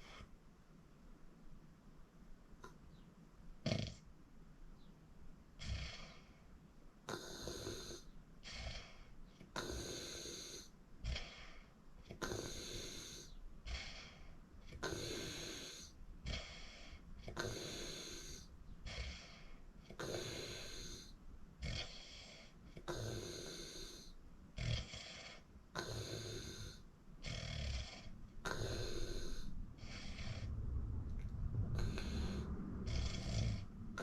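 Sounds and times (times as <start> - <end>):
person snoring with whistle: 31.8 - 34.0.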